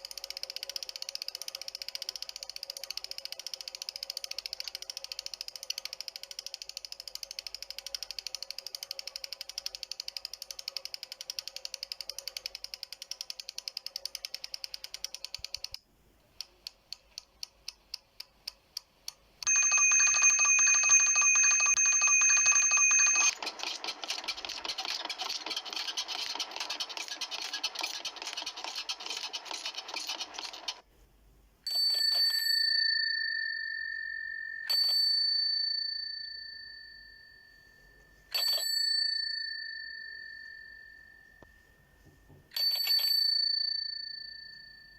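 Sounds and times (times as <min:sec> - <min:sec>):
bicycle bell ringing: 0:19.4 - 0:30.8, 0:31.7 - 0:41.8, 0:42.5 - 0:44.9.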